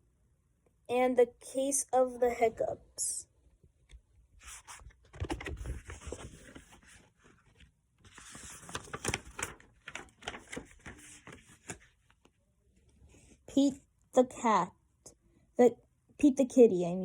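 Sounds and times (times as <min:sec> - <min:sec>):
rustling and scraping handling noise: 0:04.4 - 0:13.5.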